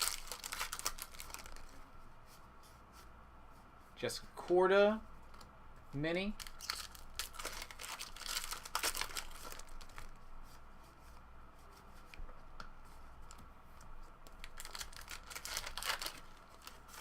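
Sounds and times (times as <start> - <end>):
foil wrapper tearing and crinkling: 0.0 - 1.7, 6.4 - 10.1, 14.4 - 17.0.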